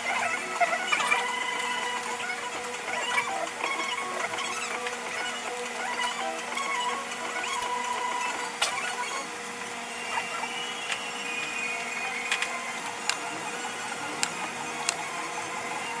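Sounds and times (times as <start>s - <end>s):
sharp clicks: 12.4s - 15.0s.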